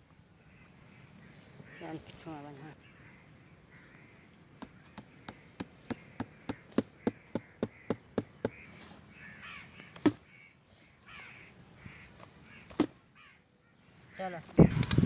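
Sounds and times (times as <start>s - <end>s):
crows cawing: 2.8s - 13.5s
sharp knocks: 4.6s - 8.6s.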